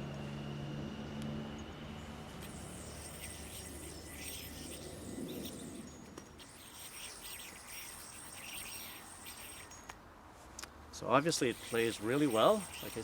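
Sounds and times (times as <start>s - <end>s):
insects trilling: 2.4s - 9.9s, 11.4s - 13.0s.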